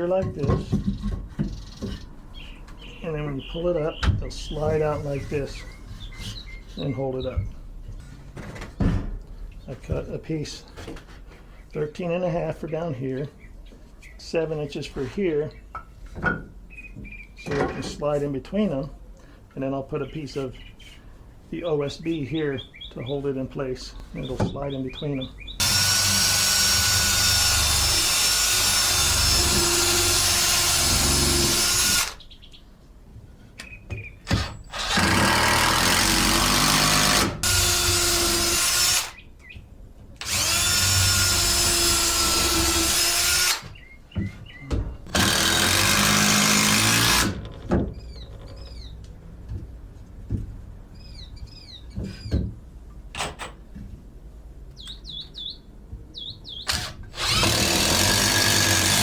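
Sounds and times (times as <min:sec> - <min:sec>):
faint birds chirping: 0:00.0 - 0:25.7, 0:26.8 - 0:45.2, 0:47.9 - 0:52.8, 0:54.6 - 0:56.9
power drill driving screws: 0:25.6 - 0:32.2, 0:34.3 - 0:39.2, 0:40.2 - 0:43.6, 0:45.1 - 0:47.4, 0:56.6 - 0:59.0.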